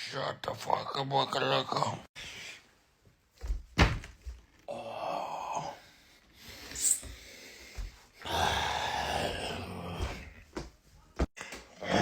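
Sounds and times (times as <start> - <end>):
person breathing heavily: 5.4 - 10.3.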